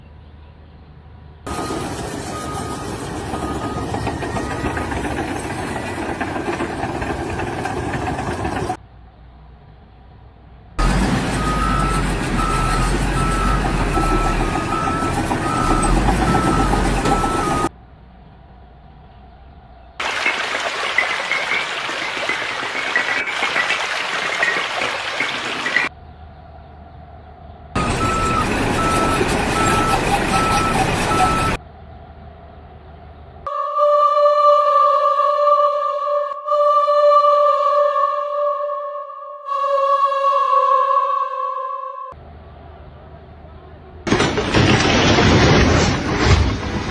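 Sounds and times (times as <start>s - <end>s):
backup alarm beeping: 1.5s - 5.2s, 10.8s - 17.7s, 27.8s - 31.6s
construction machinery clattering: 1.5s - 8.8s, 10.8s - 17.7s, 20.0s - 25.9s, 27.8s - 31.6s, 44.1s - 46.9s
rushing hiss of gushing water: 20.0s - 25.9s.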